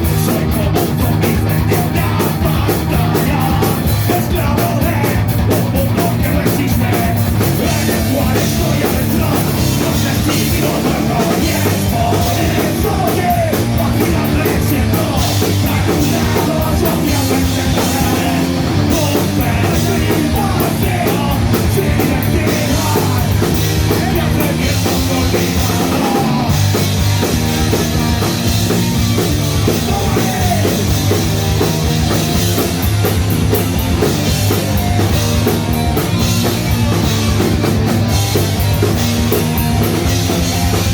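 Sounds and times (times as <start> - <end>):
punk rock band playing live: 0.0 - 40.9.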